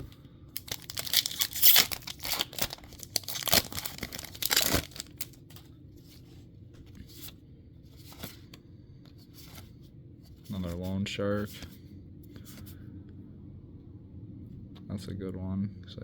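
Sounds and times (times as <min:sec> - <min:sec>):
foil wrapper crinkling and tearing: 0:00.6 - 0:05.6.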